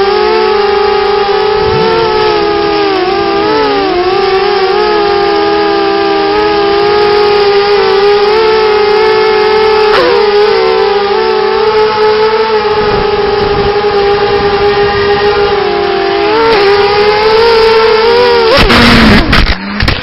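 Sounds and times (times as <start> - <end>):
drone motors whining: 0.0 - 20.0
loud rushing noise: 1.5 - 2.7.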